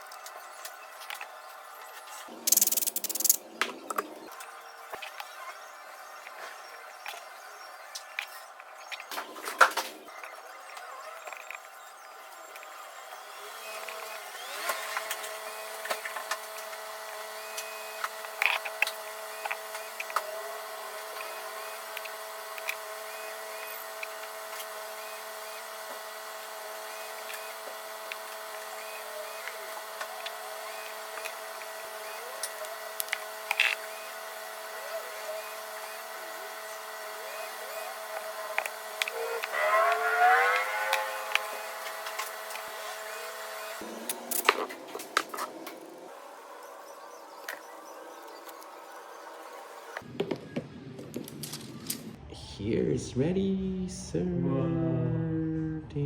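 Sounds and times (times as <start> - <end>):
small machine motor whirring: 0.0 - 50.1
short rising whine: 33.6 - 46.3.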